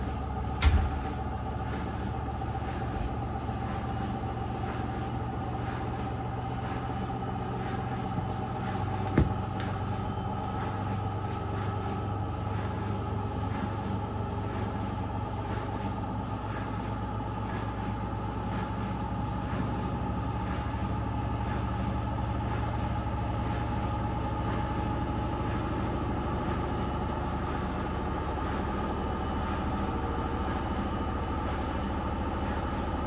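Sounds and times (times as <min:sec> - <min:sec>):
washing machine motor hum: 0:00.0 - 0:33.0
washing machine sharp knock: 0:00.6 - 0:01.2, 0:09.0 - 0:09.6.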